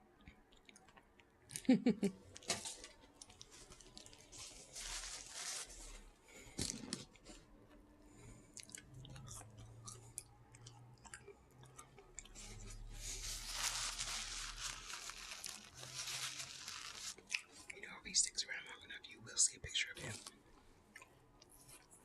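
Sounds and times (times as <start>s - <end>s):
person chewing: 0.2s - 1.7s, 2.3s - 4.8s, 8.1s - 17.8s, 20.1s - 22.0s.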